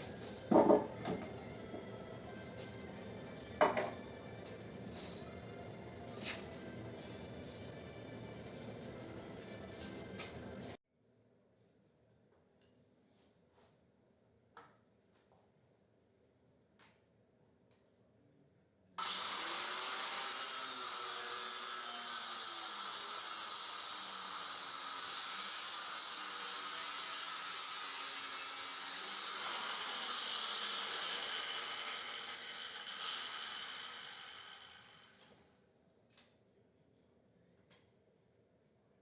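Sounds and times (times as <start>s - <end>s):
power tool cutting steel: 0.0s - 10.8s, 19.0s - 35.4s.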